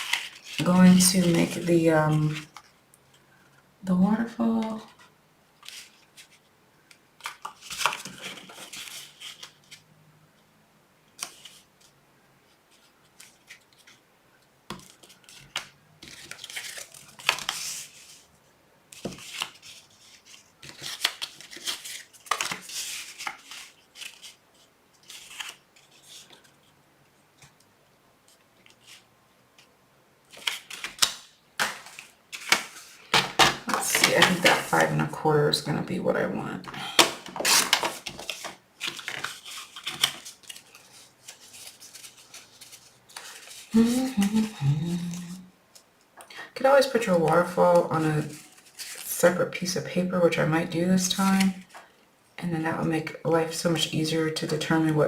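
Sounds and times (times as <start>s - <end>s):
paper rustling: 0.0s - 2.8s, 4.4s - 9.8s, 11.2s - 11.9s, 12.5s - 14.0s, 14.7s - 18.3s, 18.9s - 26.7s, 28.2s - 29.7s, 30.3s - 35.1s, 36.7s - 45.4s, 47.3s - 49.2s
paper scraping: 37.3s - 44.5s.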